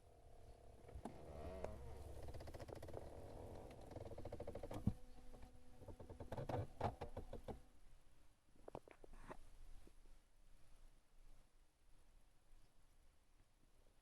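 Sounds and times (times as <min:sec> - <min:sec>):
faint steady hum: 0:00.0 - 0:14.0
fast clicking: 0:02.2 - 0:04.9.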